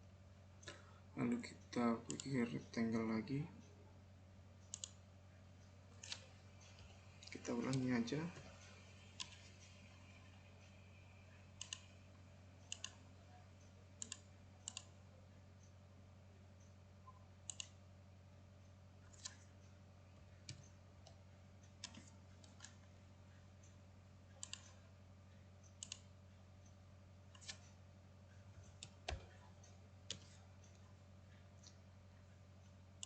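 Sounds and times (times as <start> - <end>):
faint low electrical hum: 0.0 - 33.0
computer mouse clicking: 4.6 - 5.0, 6.0 - 8.0, 8.6 - 9.8, 11.6 - 12.0, 12.6 - 13.0, 14.0 - 14.9, 17.1 - 17.8, 19.1 - 19.5, 20.4 - 22.8, 24.4 - 24.8, 25.6 - 26.1, 27.3 - 27.7.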